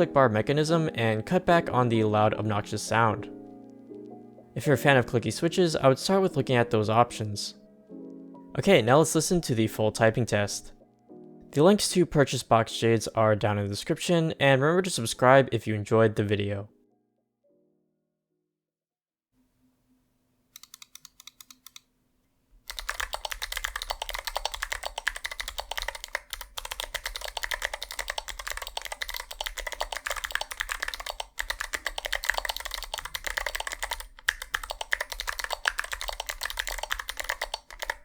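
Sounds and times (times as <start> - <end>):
clicky mechanical keyboard typing: 20.6 - 21.9, 22.7 - 38.0.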